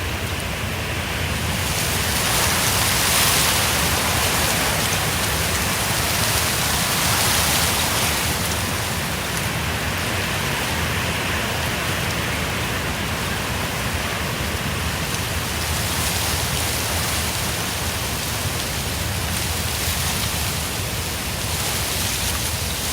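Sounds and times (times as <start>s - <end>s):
wind rumbling on microphone: 0.0s - 22.9s
wind rustling: 0.0s - 22.9s.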